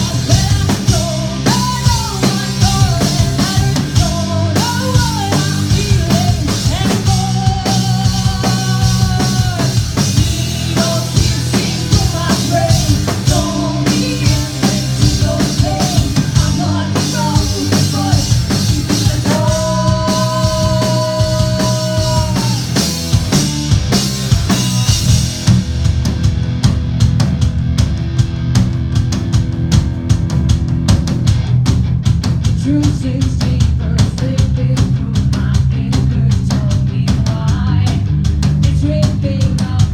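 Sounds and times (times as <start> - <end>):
rock band playing live: 0.0 - 39.9
woman singing long held notes: 10.7 - 22.6.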